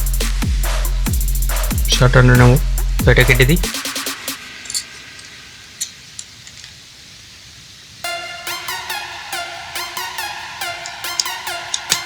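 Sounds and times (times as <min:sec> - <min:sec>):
electronic dance music: 0:00.0 - 0:04.6, 0:08.0 - 0:12.0.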